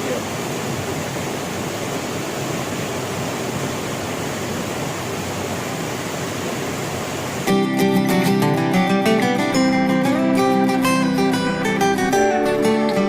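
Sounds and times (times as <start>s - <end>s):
water rushing over a dam: 0.0s - 7.6s.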